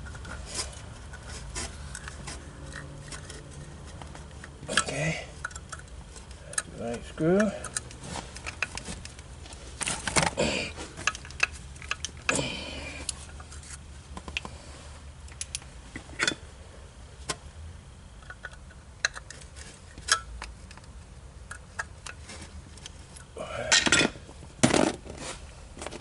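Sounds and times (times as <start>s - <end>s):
metal parts and tools clinking: 0.0s - 9.2s, 22.8s - 25.0s.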